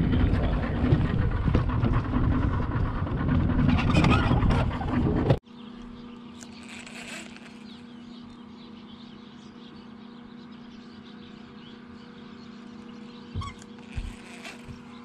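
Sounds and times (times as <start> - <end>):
steady low hum: 0.0 - 15.0
small birds chirping: 5.4 - 15.0.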